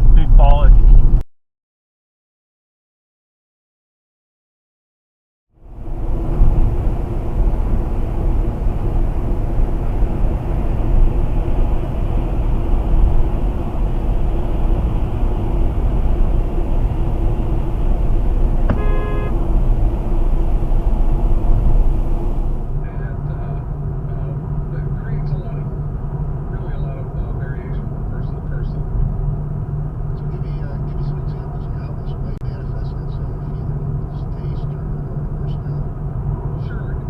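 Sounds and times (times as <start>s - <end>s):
car road and engine rumble: 0.0s - 1.2s, 5.5s - 37.0s
car horn toot: 18.6s - 19.5s.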